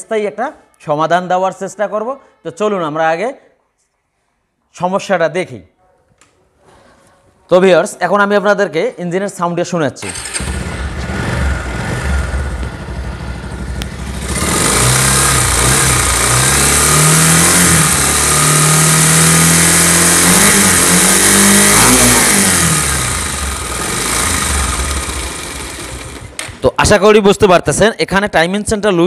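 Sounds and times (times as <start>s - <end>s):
motorcycle engine revving: 10.0s - 26.6s.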